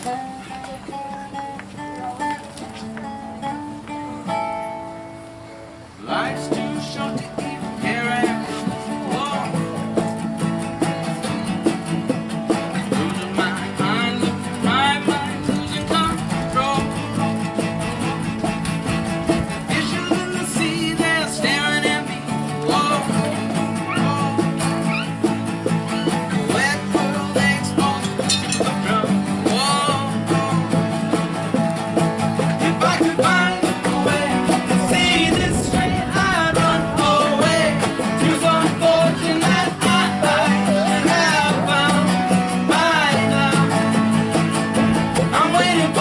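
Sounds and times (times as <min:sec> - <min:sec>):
live rock band: 0:06.4 - 0:46.0
person singing: 0:12.7 - 0:18.5, 0:19.6 - 0:31.1, 0:32.4 - 0:46.0.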